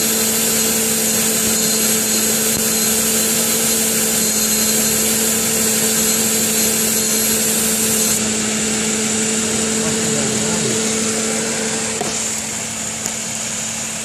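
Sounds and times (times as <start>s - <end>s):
car engine idling with hum and hiss: 5.0s - 14.0s.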